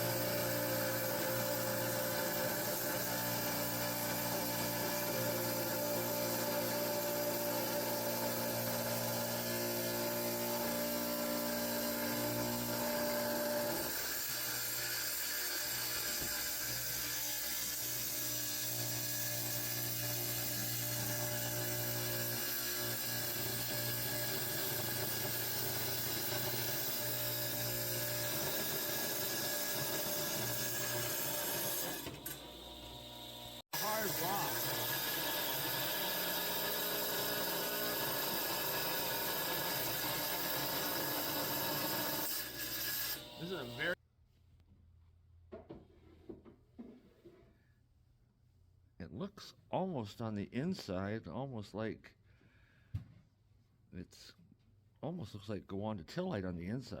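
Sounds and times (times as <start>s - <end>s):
tile saw grinding rock: 33.8s - 44.0s.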